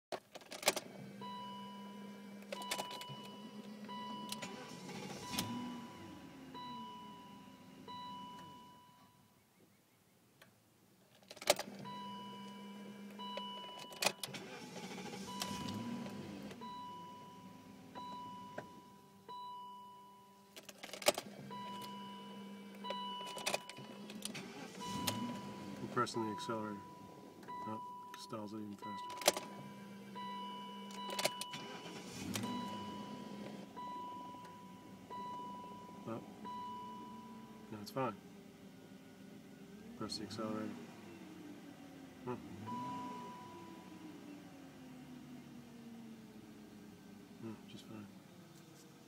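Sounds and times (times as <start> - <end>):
car engine starting and stalling: 0.1 - 8.8, 11.1 - 19.5, 20.4 - 49.0
ignition click: 0.2 - 9.2, 11.3 - 19.8, 20.5 - 38.1
high warning beep: 2.6 - 9.2, 24.8 - 37.5, 42.5 - 43.8.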